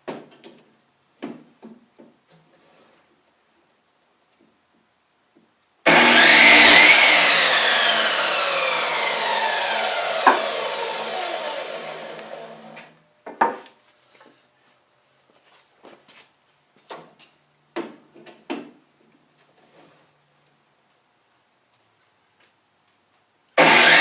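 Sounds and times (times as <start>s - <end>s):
power saw cutting wood: 5.9s - 12.9s, 23.6s - 24.0s
wooden knocks: 10.2s - 10.5s.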